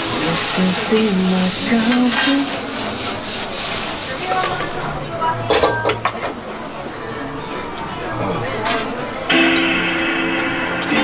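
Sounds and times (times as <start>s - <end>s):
food sizzling in a hot pan: 0.0s - 5.0s.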